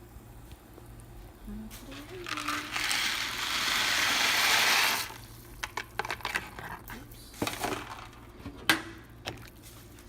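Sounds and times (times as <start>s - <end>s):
water boiling: 0.0s - 6.9s.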